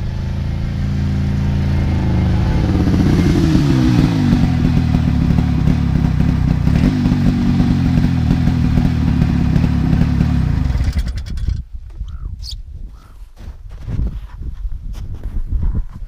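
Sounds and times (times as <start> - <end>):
snowmobile engine running: 0.0 - 11.2.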